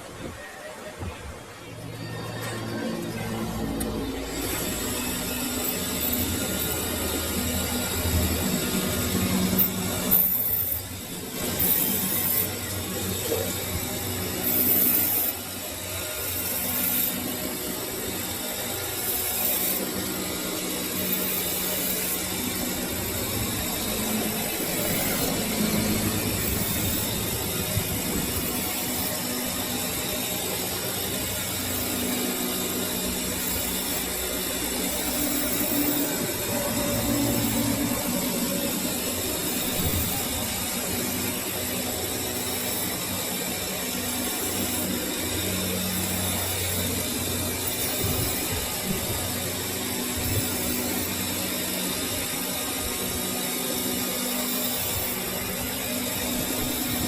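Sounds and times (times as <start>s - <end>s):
metal lathe motor hum: 1.6s - 57.0s.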